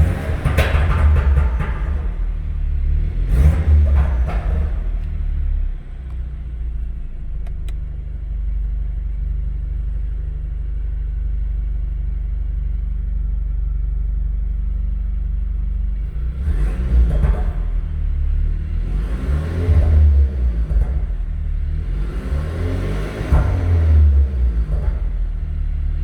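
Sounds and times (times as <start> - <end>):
car engine running at low revs: 0.0 - 26.0.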